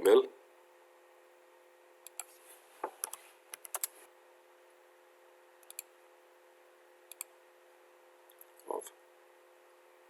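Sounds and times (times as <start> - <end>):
faint steady hum: 0.0 - 10.0
mouse and keyboard clicks: 2.0 - 2.4, 3.0 - 4.0, 5.6 - 5.9, 7.1 - 7.3.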